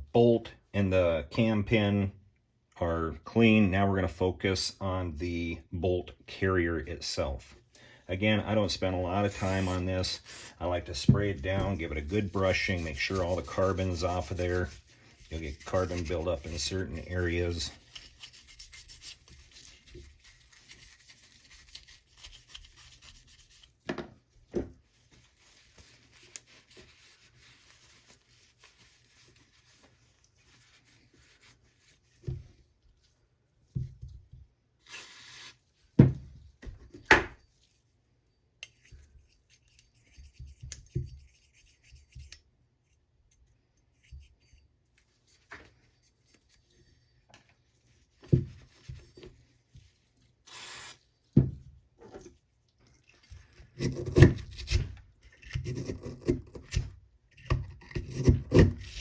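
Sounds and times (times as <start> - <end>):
brush scrubbing metal: 8.5 - 23.8, 24.9 - 32.2.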